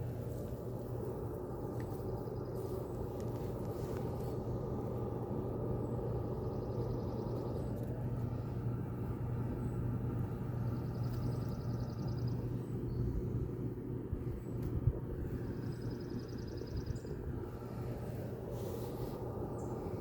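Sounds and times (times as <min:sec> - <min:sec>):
clothes dryer humming: 0:00.0 - 0:16.3
air rushing from vent: 0:11.9 - 0:20.0.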